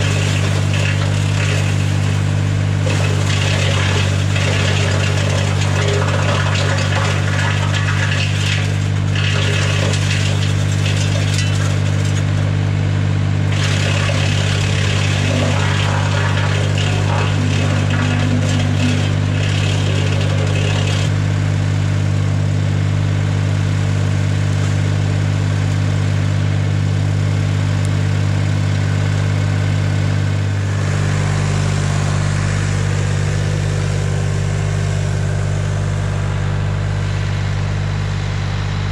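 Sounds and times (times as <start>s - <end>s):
rough irregular clatter: 0.0s - 12.5s, 13.5s - 21.1s
wood chipper drone: 0.0s - 38.9s.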